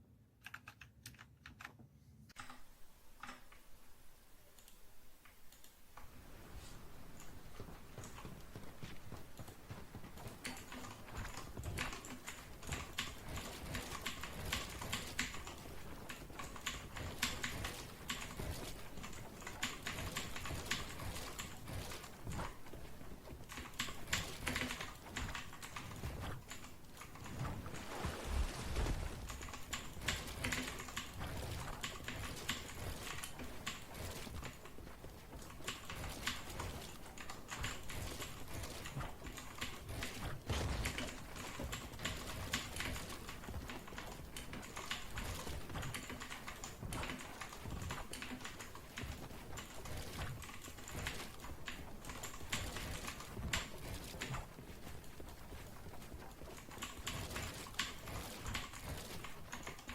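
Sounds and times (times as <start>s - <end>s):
mechanical keyboard typing: 0.4s - 2.6s, 29.3s - 34.7s.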